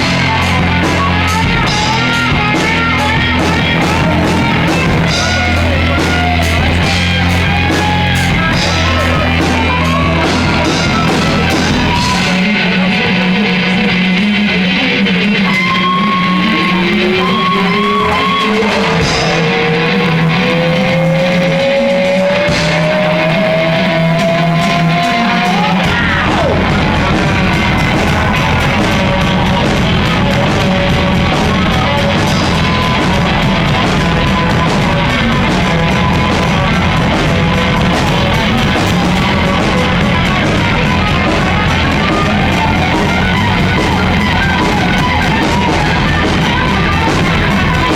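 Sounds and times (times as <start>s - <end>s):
bass and drums: 0.0s - 47.9s
rock music: 0.0s - 47.9s
long rising note: 3.5s - 10.0s, 15.5s - 18.8s, 20.0s - 22.0s, 22.8s - 26.0s.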